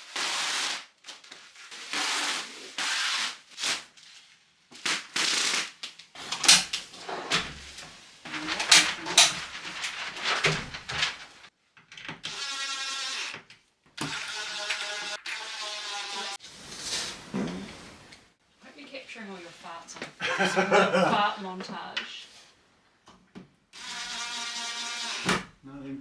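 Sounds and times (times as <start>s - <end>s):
rustling: 3.8s - 11.5s, 16.3s - 20.4s
boards sliding and scraping: 14.4s - 18.4s.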